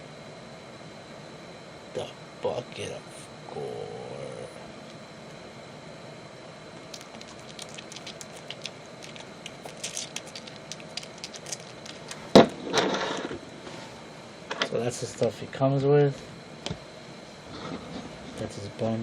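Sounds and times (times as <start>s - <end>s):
plastic pieces clicking: 7.0s - 12.2s.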